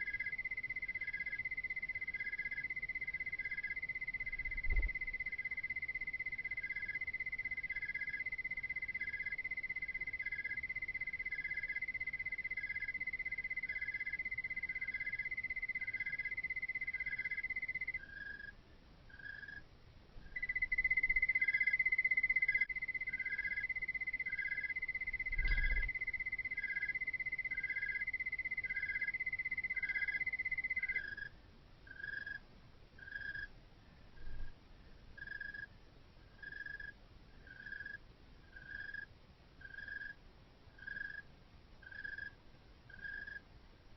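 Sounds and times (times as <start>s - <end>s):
cricket chirping in pulses: 0.0s - 32.4s, 33.0s - 33.5s, 35.2s - 43.4s
cricket high trill: 20.4s - 31.3s.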